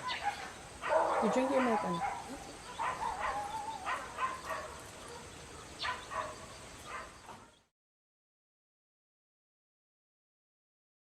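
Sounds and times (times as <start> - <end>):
dog yipping: 0.0 - 7.5.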